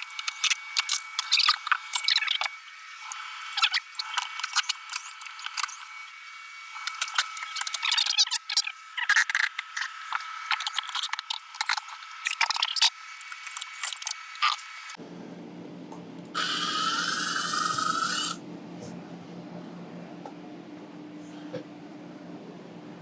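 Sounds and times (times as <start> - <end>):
power drill running: 16.4 - 18.4.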